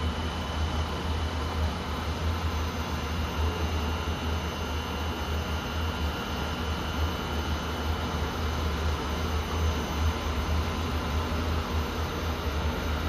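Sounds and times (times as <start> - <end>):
industrial machinery hum: 0.0 - 13.0.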